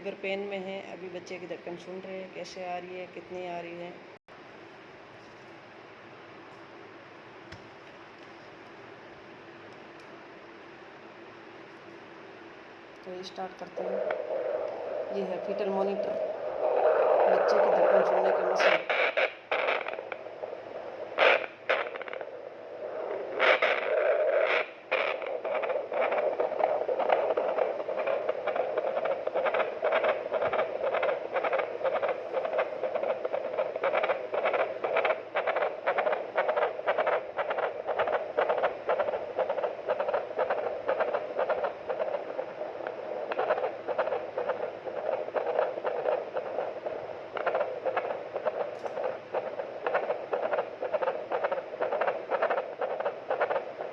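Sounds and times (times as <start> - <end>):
static hiss: 0.0 - 53.9
scrapes and crackles: 13.3 - 53.9
doppler heartbeat whooshing: 13.8 - 53.9.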